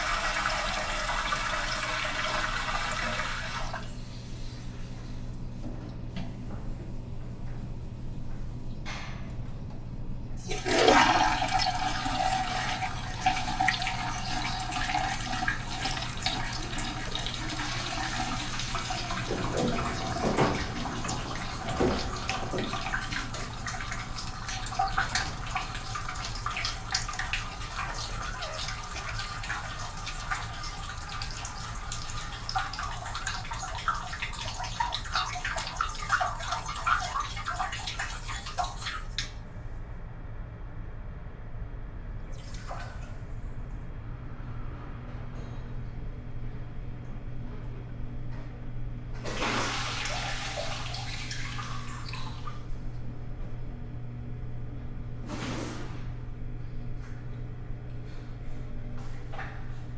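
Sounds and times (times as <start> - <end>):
toilet flushing: 0.0 - 6.5, 10.4 - 39.4, 42.3 - 43.5, 49.2 - 52.9.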